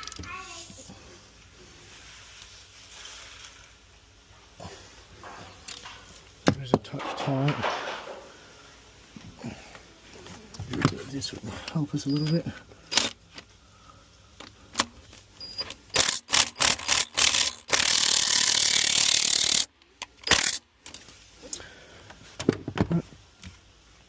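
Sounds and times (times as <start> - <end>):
power drill drilling metal: 15.9 - 20.6.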